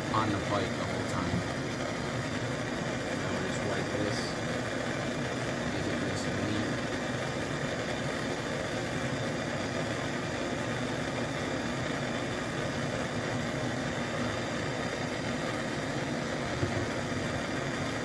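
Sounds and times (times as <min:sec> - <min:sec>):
propane torch flame rushing: 0:00.0 - 0:18.0.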